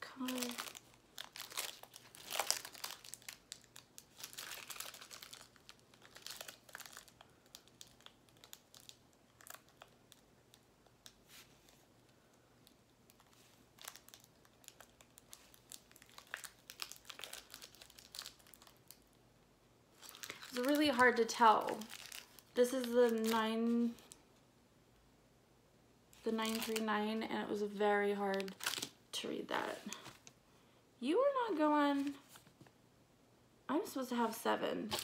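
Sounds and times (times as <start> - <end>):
plastic bags crinkling: 0.0 - 10.2, 12.6 - 19.1, 20.0 - 24.2, 26.4 - 26.8, 28.3 - 29.0.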